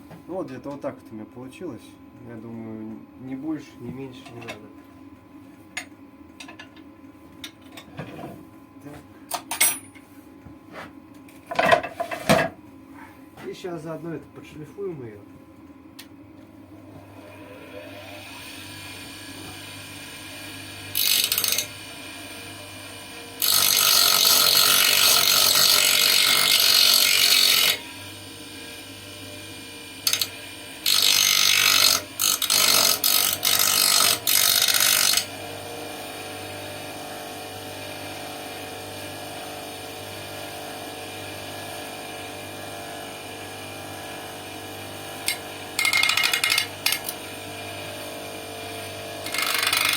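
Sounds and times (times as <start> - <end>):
electric grinder grinding metal: 17.1 - 49.9.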